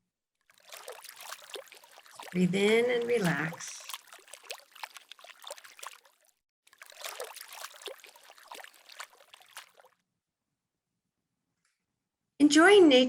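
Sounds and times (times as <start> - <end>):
water trickling and babbling: 0.5 - 10.0.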